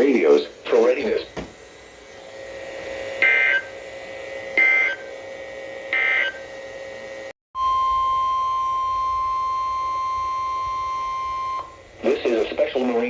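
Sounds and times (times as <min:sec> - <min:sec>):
steady alarm tone: 0:03.0 - 0:06.8, 0:07.6 - 0:12.6.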